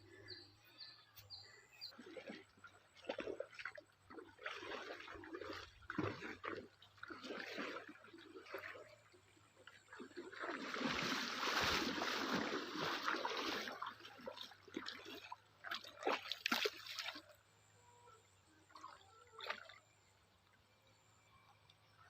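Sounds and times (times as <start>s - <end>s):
water splashing: 1.8s - 17.4s, 18.6s - 20.1s.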